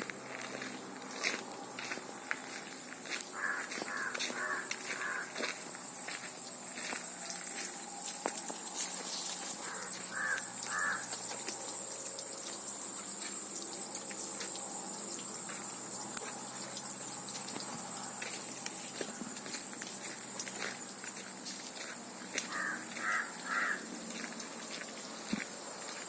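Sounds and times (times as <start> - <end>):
constant hiss: 0.0 - 26.0
bird calling: 3.3 - 5.4, 9.6 - 11.2, 22.5 - 23.9.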